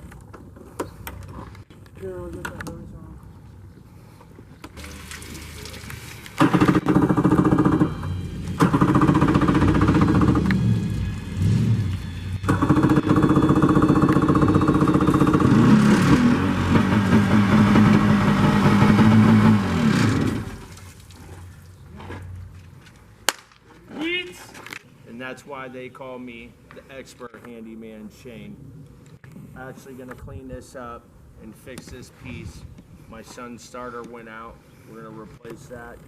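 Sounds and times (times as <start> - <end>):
jet ski engine revving: 4.8 - 20.7.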